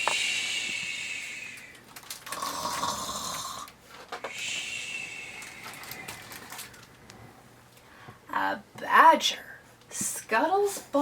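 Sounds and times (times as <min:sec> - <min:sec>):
person imitating snoring: 0:02.3 - 0:03.7.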